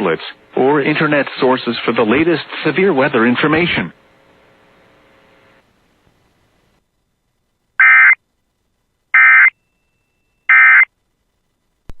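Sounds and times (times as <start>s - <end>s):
harsh digital data tones: 7.8s - 8.2s, 9.2s - 10.9s.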